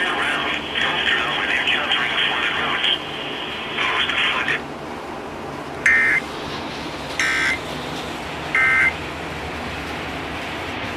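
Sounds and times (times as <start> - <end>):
radio hiss: 0.0 - 4.7
buzzy digital code bursts: 5.9 - 6.2, 7.2 - 7.6, 8.5 - 8.9.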